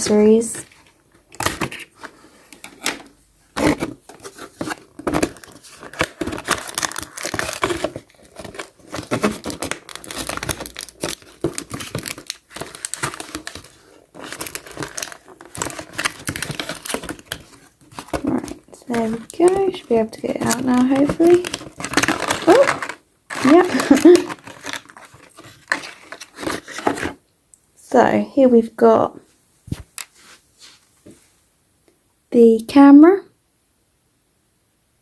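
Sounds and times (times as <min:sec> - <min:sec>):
plastic packaging crinkling: 0:00.1 - 0:27.2.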